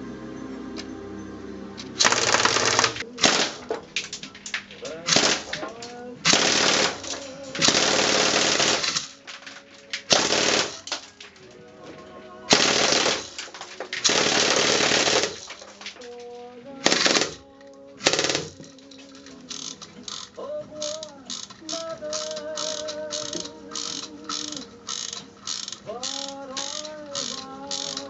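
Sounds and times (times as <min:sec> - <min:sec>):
airsoft gun rapid fire: 0:02.0 - 0:03.8, 0:04.8 - 0:09.2, 0:10.0 - 0:11.1, 0:12.5 - 0:15.6, 0:16.8 - 0:17.4, 0:18.0 - 0:18.7, 0:22.1 - 0:28.0.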